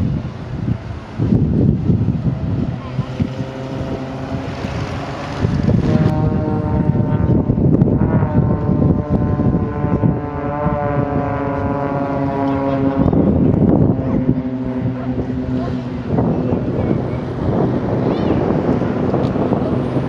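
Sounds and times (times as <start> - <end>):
propeller aircraft droning: 0.0 - 20.0
wind buffeting microphone: 0.0 - 20.0.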